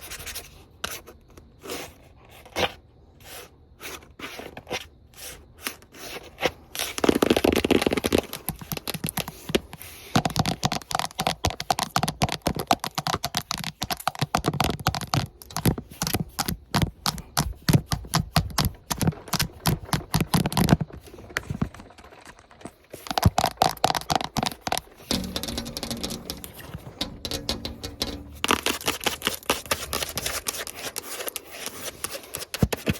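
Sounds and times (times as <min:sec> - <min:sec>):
fingernails tapping and scratching: 0:23.0 - 0:32.9.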